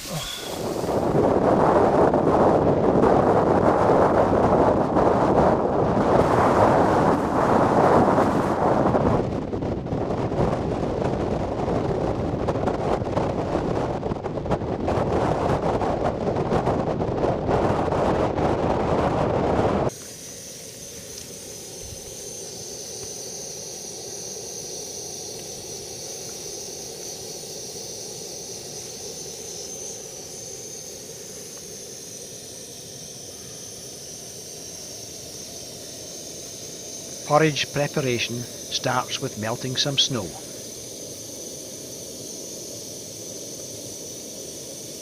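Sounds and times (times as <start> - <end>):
camping stove burner hissing: 0.0 - 13.5, 19.8 - 45.0
blizzard wind blasting microphone: 0.0 - 19.9.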